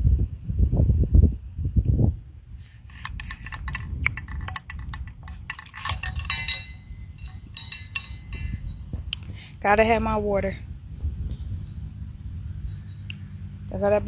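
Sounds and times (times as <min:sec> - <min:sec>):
wind rumble on microphone: 0:00.0 - 0:14.0
drink container clinking and crackling: 0:02.6 - 0:09.3, 0:12.5 - 0:13.4.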